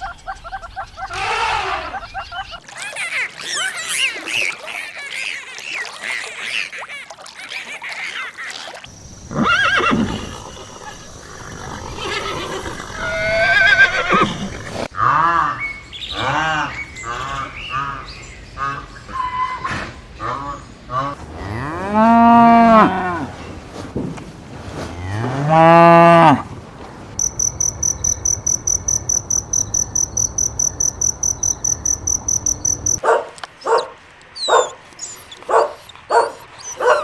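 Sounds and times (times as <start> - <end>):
loud animal call: 1.0 - 2.3, 8.9 - 21.2, 27.2 - 37.0
high chirps: 27.2 - 37.0
short repeated animal calls: 27.2 - 37.0.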